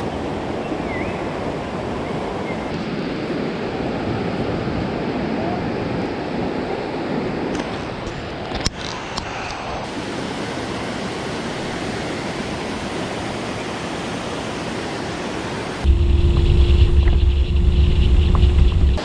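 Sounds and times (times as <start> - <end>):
waterfall rushing: 0.0 - 8.4, 9.8 - 19.0
low rumble: 15.8 - 19.0
steady hum: 15.8 - 19.0.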